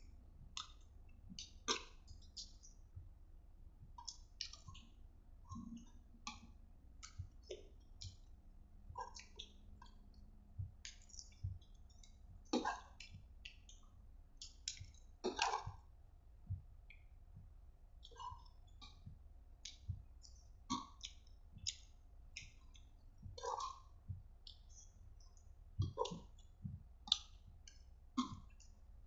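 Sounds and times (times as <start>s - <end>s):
wet mouth clicks and smacks: 0.5s - 2.6s, 18.0s - 28.7s.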